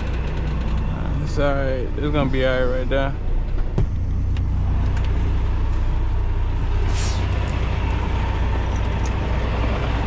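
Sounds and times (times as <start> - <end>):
diesel truck engine idling: 0.0 - 10.0
air hiss: 6.8 - 7.3.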